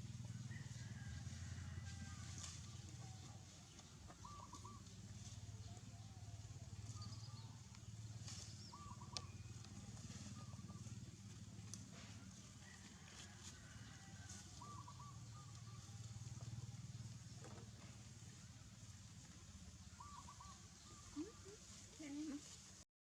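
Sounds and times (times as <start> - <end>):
steady low hum: 0.0 - 12.9
birds chirping: 3.7 - 11.1, 19.8 - 22.4.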